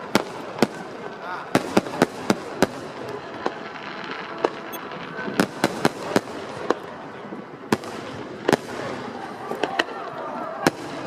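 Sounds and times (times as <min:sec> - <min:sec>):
fireworks bursting with sharp bangs: 0:00.0 - 0:11.0.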